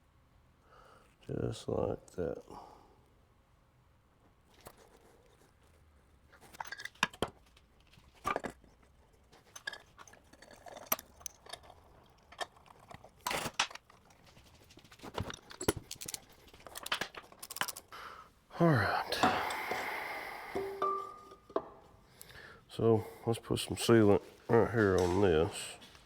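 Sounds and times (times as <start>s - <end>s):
metal parts clinking on workbench: 15.1s - 17.9s.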